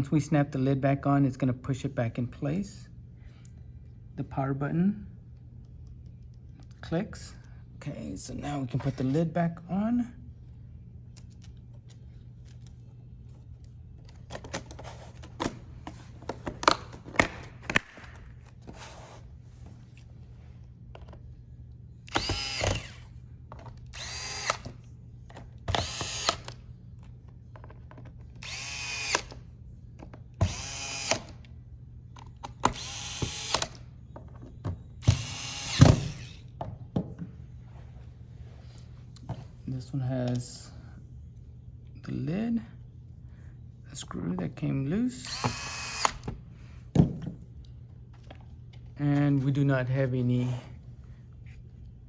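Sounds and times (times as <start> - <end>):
electric screwdriver bursts: 22.1 - 23.2, 23.9 - 24.8, 25.7 - 26.6, 28.4 - 29.4, 30.4 - 31.4, 32.5 - 33.8, 35.0 - 36.5, 45.2 - 46.3.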